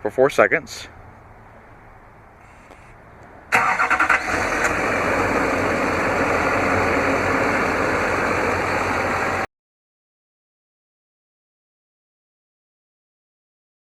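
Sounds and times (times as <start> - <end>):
diesel engine cranking and idling: 3.5 - 9.5.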